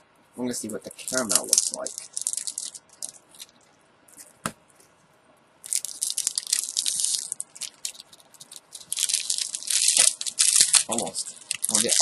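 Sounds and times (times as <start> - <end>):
wrapper crinkling and tearing: 0.9 - 3.6, 5.6 - 12.0.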